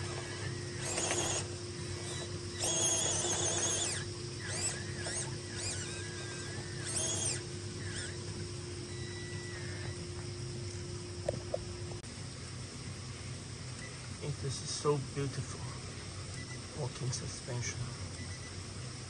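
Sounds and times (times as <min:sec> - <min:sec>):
birds calling: 0:00.0 - 0:11.9
low hum: 0:00.0 - 0:16.8.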